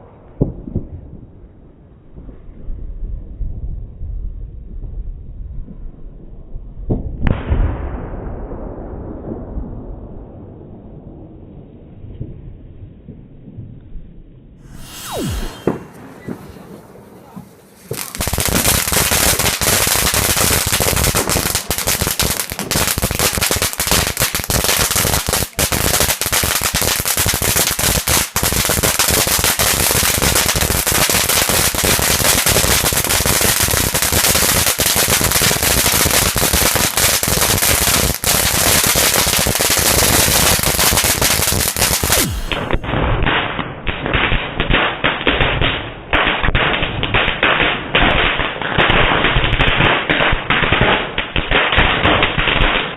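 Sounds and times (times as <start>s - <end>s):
firecrackers going off: 14.7s - 52.9s.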